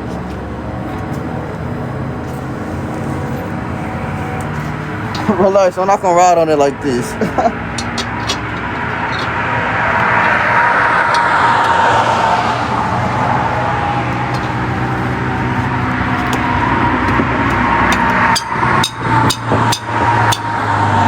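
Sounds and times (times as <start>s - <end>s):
steady engine hum: 0.0s - 21.0s
vehicle passing: 0.0s - 21.0s
clicks: 7.8s - 12.1s.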